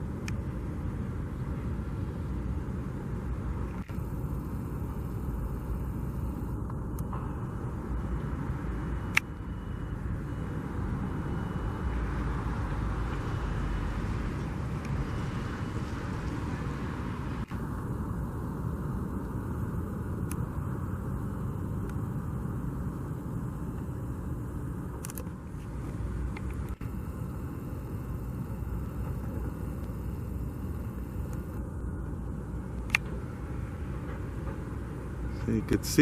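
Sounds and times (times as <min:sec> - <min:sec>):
low outdoor background rumble: 0:00.0 - 0:36.0.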